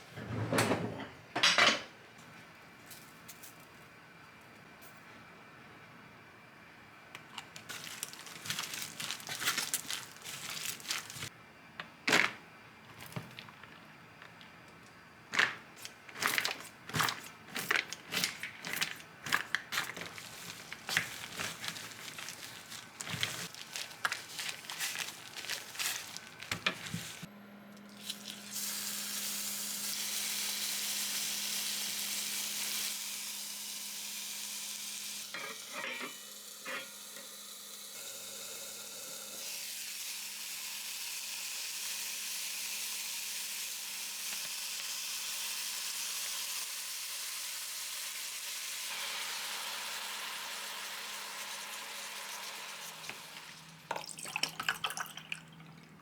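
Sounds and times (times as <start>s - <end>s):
kitchen handling clicks and knocks: 0.2s - 1.9s
food sizzling in a frying pan: 28.0s - 53.8s.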